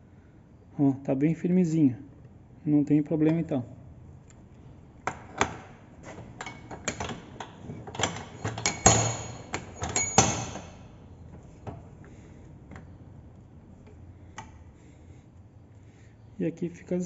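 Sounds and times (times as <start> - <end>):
metal parts clinking and knocking: 5.0 - 11.8.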